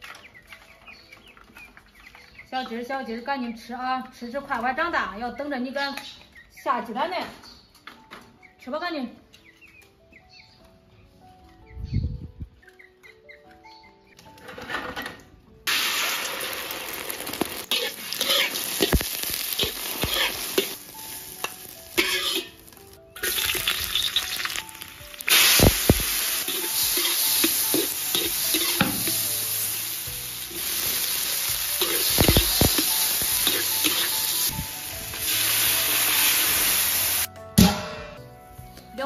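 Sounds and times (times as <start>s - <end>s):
crackling sizzle over fire: 0.0s - 3.0s, 15.6s - 37.3s
soft background music: 0.0s - 39.0s.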